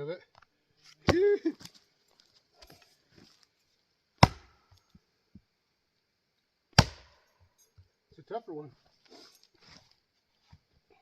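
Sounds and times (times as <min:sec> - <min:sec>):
axe chopping wood: 0:01.0 - 0:01.3, 0:04.2 - 0:04.7, 0:06.7 - 0:07.2.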